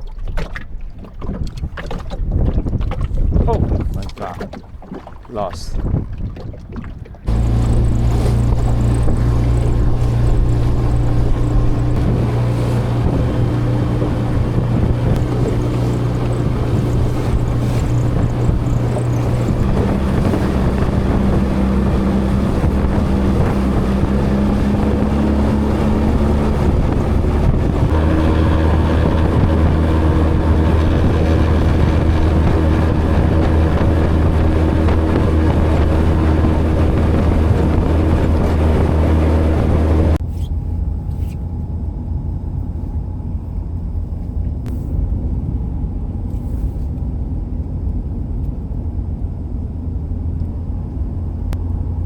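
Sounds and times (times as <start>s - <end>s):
motorboat engine running: 0.0s - 52.0s
wind on microphone: 0.8s - 40.2s.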